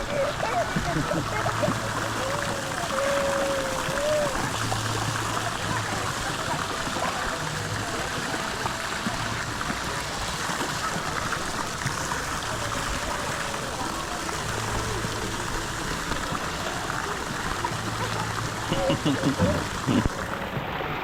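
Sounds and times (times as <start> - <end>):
water rushing over waterfalls: 0.0 - 21.0
wavering voice-like tone: 18.2 - 20.2.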